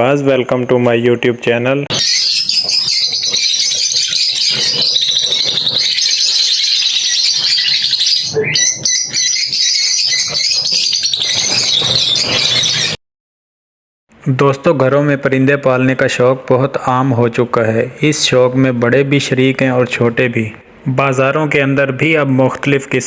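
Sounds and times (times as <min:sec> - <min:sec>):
cage birds chirping: 0:00.0 - 0:13.0.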